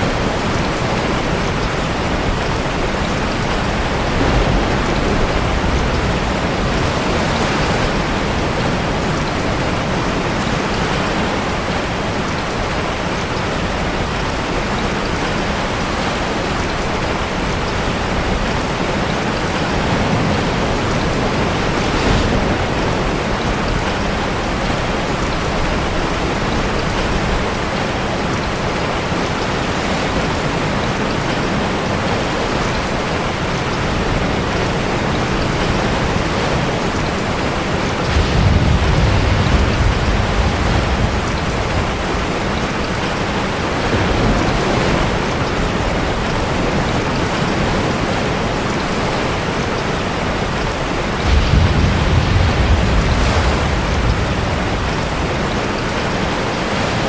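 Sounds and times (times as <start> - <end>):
heavy rain: 0.0 - 57.0
sea waves crashing: 0.0 - 57.0.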